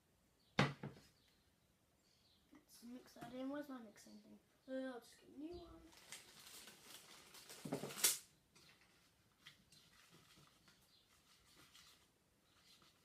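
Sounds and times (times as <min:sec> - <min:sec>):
rustling handling noise: 0:05.6 - 0:13.0.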